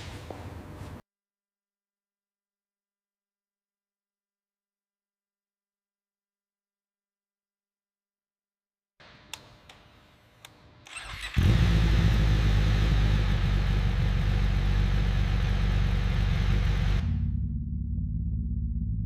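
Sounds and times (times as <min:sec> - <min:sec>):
motorcycle engine starting and running: 0:10.8 - 0:19.0.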